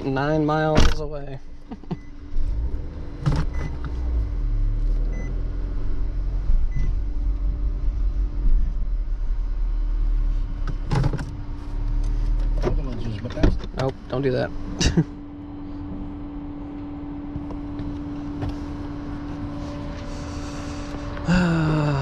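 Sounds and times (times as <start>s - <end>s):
truck engine running: 14.0s - 22.0s.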